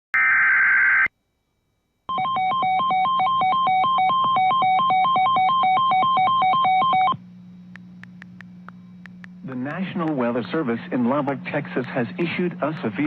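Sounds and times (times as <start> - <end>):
low steady hum: 1.2 - 13.0
two-tone electronic alert: 2.1 - 7.2.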